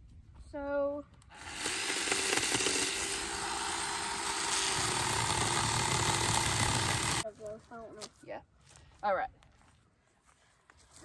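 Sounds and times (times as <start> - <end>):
chainsaw cutting branches: 1.3 - 7.2.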